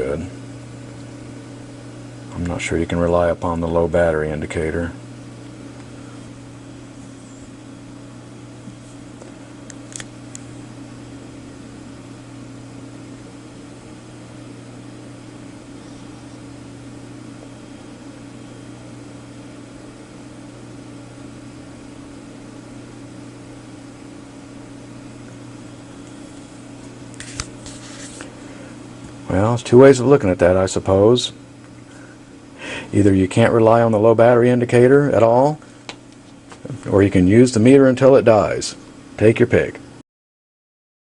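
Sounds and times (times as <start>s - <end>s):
electronic equipment hum and hiss: 0.0s - 40.0s
sharp click: 9.7s - 10.5s.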